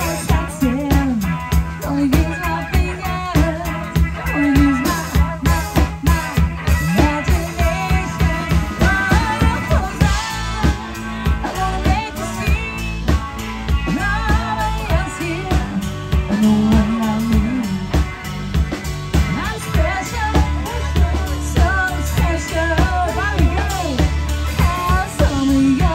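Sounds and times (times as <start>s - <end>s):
bass line: 0.0s - 25.9s
drum beat: 0.0s - 25.9s
live band music: 0.0s - 25.9s.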